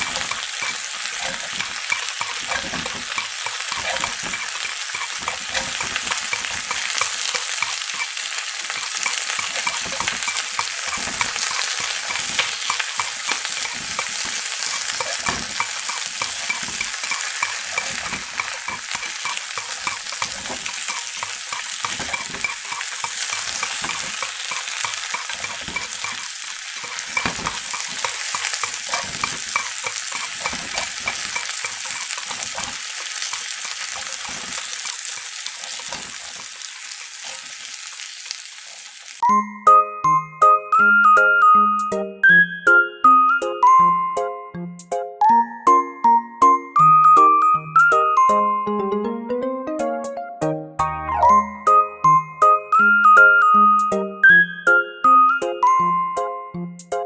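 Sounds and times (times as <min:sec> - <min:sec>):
chicken sizzling in hot oil: 0:00.0 - 0:39.2.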